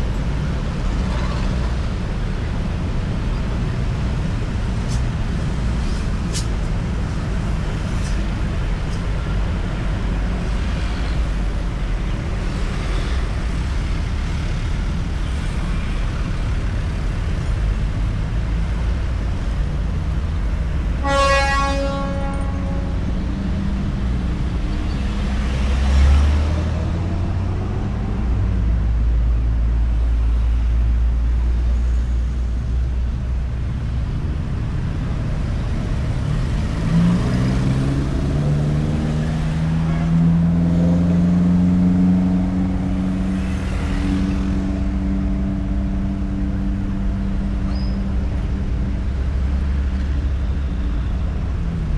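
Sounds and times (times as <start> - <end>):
road traffic rumbling: 0.0 - 51.9
vehicle horn: 21.0 - 23.2
vehicle passing close: 34.8 - 46.3
engine revving: 35.6 - 46.2.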